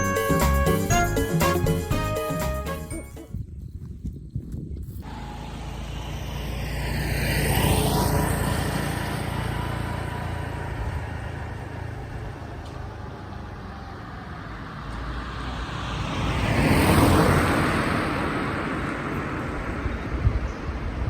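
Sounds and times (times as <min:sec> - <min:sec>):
engine rumble: 0:04.8 - 0:21.0
vehicle passing close: 0:05.0 - 0:21.0.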